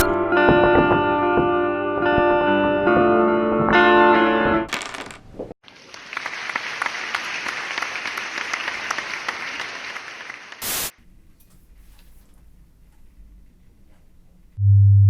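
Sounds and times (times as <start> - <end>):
hands clapping: 5.6 - 10.6.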